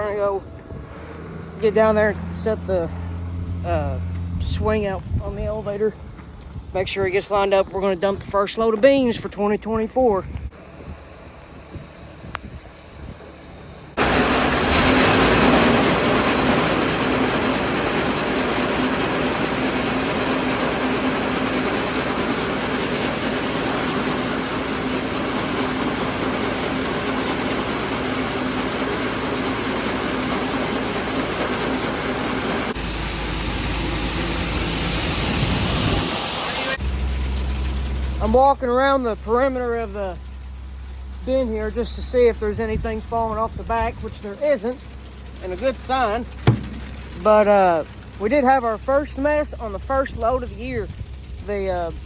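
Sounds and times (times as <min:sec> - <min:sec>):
grain auger rushing and rattling: 0:10.5 - 0:52.0.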